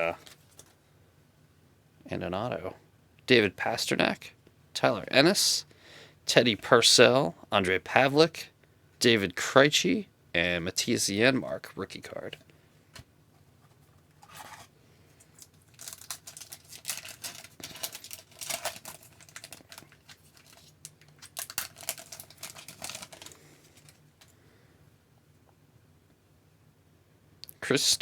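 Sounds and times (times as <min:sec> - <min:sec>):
foil wrapper tearing and crinkling: 0:15.3 - 0:24.0.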